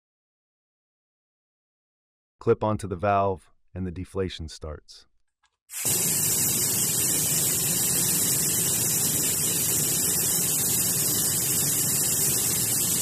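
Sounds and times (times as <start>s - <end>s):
air hissing out of tire: 5.7s - 13.0s.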